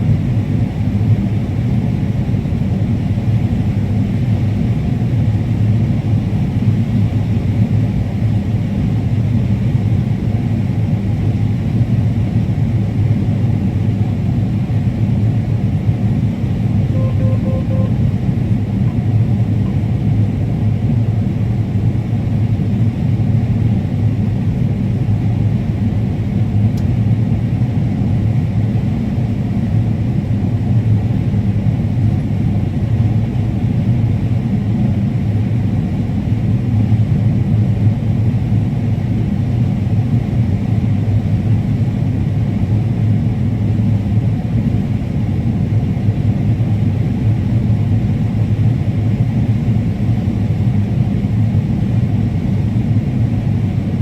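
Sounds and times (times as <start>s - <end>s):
combine harvester low rumble: 0.0s - 31.3s.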